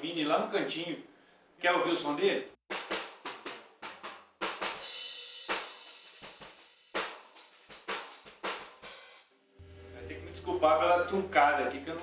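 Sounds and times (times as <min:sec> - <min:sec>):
kick and snare drums: 0:02.7 - 0:09.3
cymbal wash ringing: 0:09.4 - 0:12.0.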